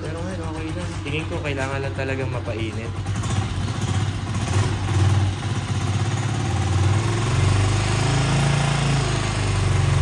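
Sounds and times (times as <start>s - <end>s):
deeper engine rumble: 0.0s - 4.4s
motorcycle engine idling: 0.0s - 7.4s.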